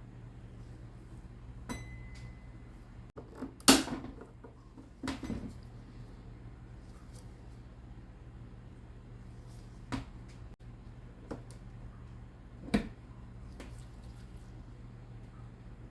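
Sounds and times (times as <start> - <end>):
steady low hum: 0.0 - 3.2.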